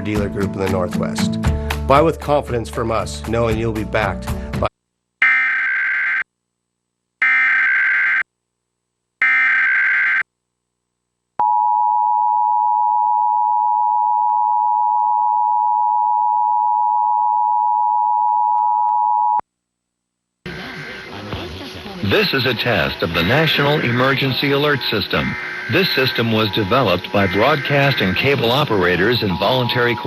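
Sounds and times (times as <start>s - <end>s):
harsh buzzing data bursts: 20.4s - 30.0s
steady two-tone alert signal: 22.4s - 30.0s.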